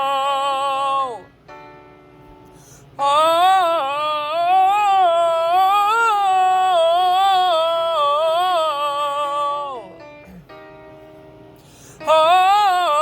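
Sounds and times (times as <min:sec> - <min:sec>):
person singing a long held vowel: 0:00.0 - 0:01.3, 0:03.0 - 0:10.5, 0:12.0 - 0:13.0.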